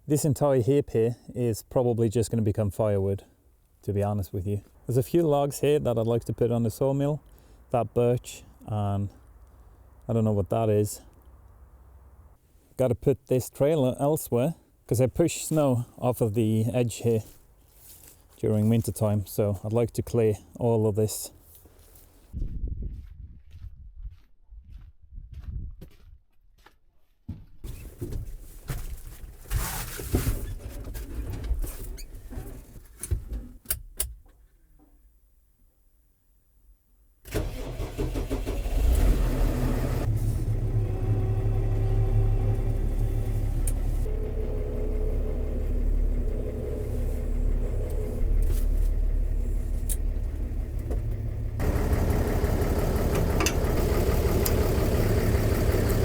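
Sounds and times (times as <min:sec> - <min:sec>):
footsteps: 0:17.2 - 0:19.0, 0:21.4 - 0:29.6
tractor diesel engine running: 0:37.3 - 0:56.0.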